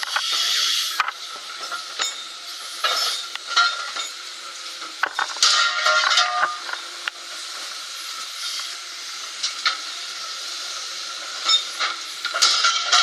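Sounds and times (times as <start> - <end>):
hydraulic hiss: 0.0 - 4.9, 6.9 - 13.0
sharp metallic clanks: 1.0 - 4.2, 5.1 - 6.8, 11.4 - 13.0.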